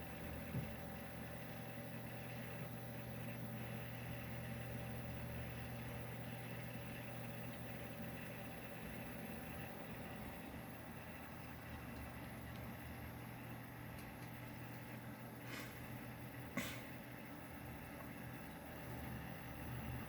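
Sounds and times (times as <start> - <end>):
hard drive humming and grinding: 0.0 - 20.0.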